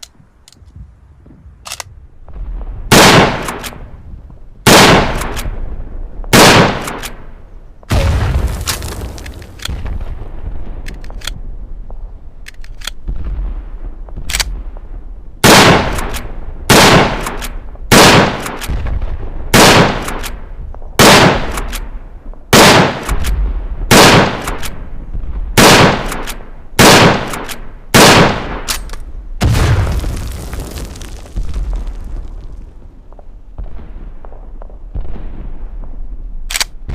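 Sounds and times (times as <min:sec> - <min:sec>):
rifle shots with echoing tails: 0:01.6 - 0:04.0, 0:04.6 - 0:11.6, 0:12.6 - 0:31.6, 0:32.4 - 0:36.9
faint clicks: 0:12.4 - 0:13.0.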